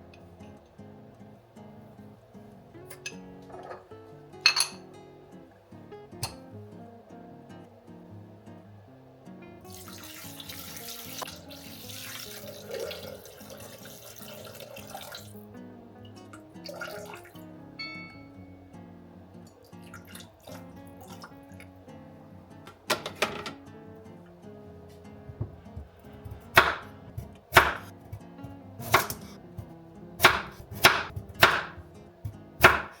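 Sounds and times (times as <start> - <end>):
soft background music: 0.0 - 33.0
tap running into a sink: 9.8 - 13.0.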